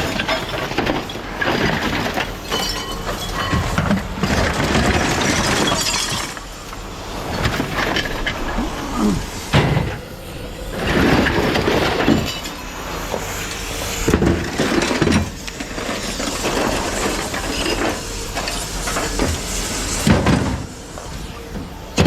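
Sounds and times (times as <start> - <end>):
loud crashes: 3.8 - 12.6.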